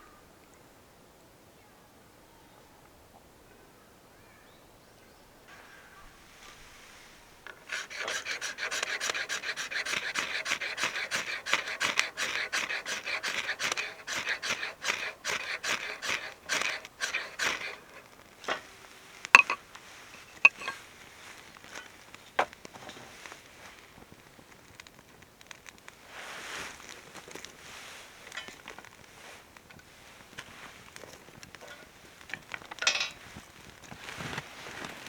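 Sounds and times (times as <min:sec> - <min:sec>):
fast rasping strokes: 0:07.5 - 0:18.7, 0:19.4 - 0:19.6, 0:20.4 - 0:20.8.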